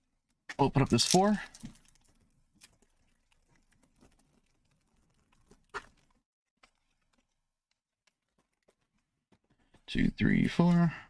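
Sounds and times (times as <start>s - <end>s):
card pack rustling and clicking: 0.6s - 2.0s.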